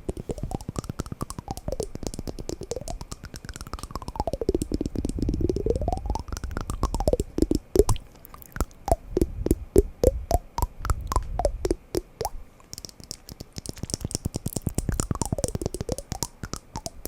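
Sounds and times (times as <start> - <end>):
rapid knocking on wooden blocks: 0.0 - 8.0, 8.6 - 17.0.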